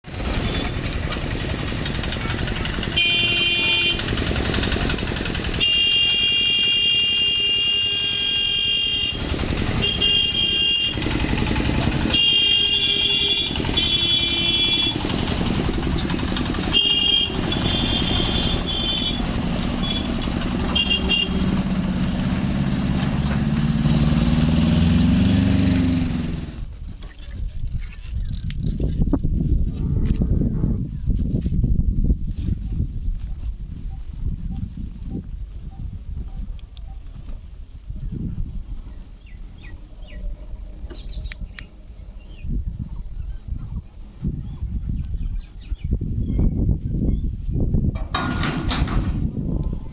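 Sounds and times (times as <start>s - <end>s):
motorcycles running: 0.0s - 26.7s
road traffic: 0.0s - 26.8s, 33.6s - 46.1s, 47.7s - 49.9s
vehicle horns honking: 2.7s - 4.5s, 5.4s - 26.5s
engine note rising in pitch: 9.0s - 26.7s.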